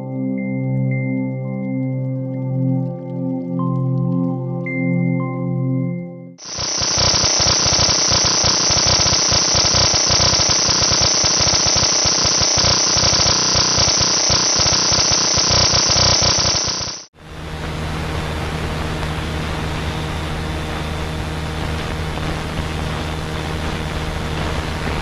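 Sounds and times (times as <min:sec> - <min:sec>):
harsh crackling static: 0:06.4 - 0:25.0.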